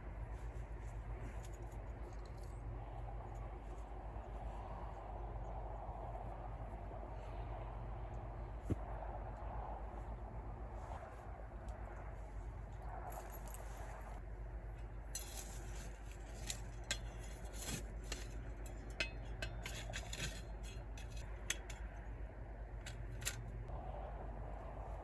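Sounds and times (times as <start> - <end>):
small hard objects clinking: 15.2 - 21.8.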